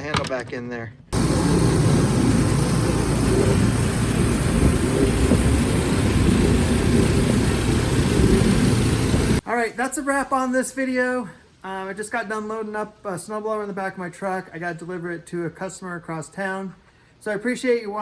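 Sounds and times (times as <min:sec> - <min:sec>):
engine running steadily: 0:01.2 - 0:09.4.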